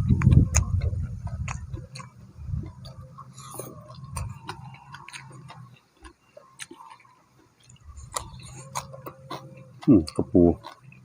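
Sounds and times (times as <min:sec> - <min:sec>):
low rumble: 0:00.0 - 0:04.8
person chewing crunchy food: 0:00.0 - 0:11.0.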